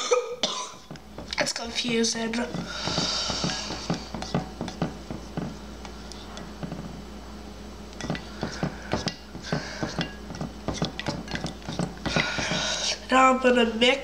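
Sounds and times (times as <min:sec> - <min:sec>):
utensil tapping glass bowl: 0:00.9 - 0:06.9, 0:08.0 - 0:12.6.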